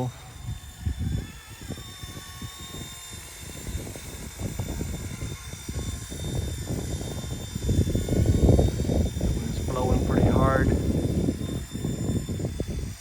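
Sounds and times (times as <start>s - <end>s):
remote-control helicopter rotor whine: 0.0s - 13.0s
wind buffeting microphone: 0.0s - 13.0s.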